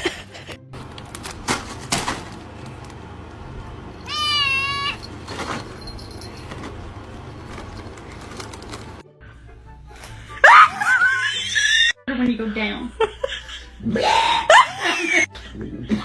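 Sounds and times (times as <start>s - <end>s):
pet high cry: 4.0s - 5.1s.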